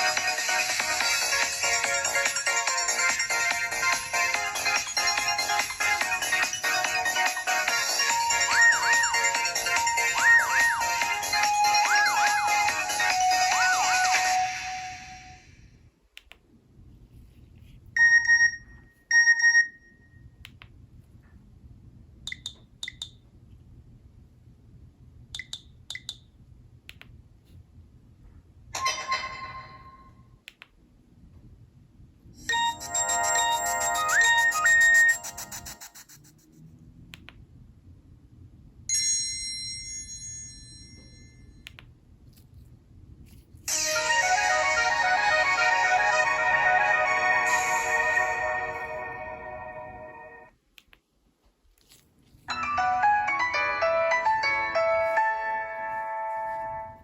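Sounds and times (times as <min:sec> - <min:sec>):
loud electronic beeps: 0:08.3 - 0:09.3
soft clicks: 0:16.1 - 0:16.5, 0:26.9 - 0:27.2, 0:30.4 - 0:30.8, 0:50.7 - 0:51.1
mobile phone ringtone: 0:18.0 - 0:20.1, 0:32.5 - 0:35.9
phone bell-like chime: 0:32.5 - 0:35.7, 0:38.9 - 0:41.6.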